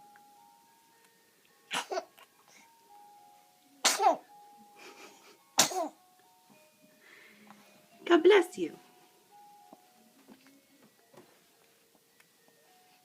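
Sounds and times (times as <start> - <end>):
faint music: 0.0 - 13.0
baby sneezing: 3.8 - 4.2, 5.6 - 5.9.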